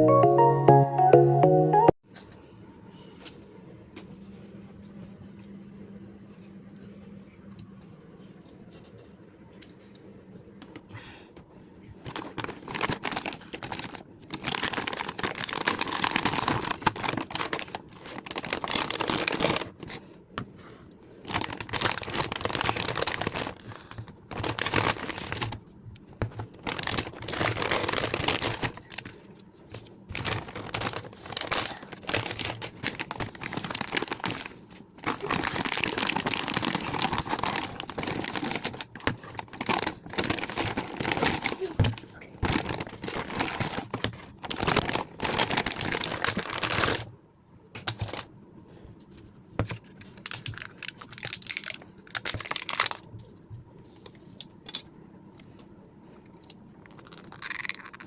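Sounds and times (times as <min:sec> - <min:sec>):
packaging crinkling and tearing: 0:12.0 - 0:20.1, 0:21.2 - 0:47.1, 0:47.8 - 0:48.3, 0:49.7 - 0:53.1, 0:56.8 - 0:58.0.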